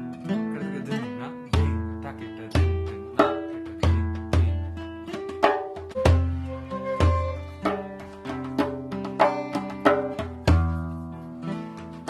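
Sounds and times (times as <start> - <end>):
hand drum playing rhythm: 0.0 - 12.0
melodic instrument holding notes: 6.0 - 7.6.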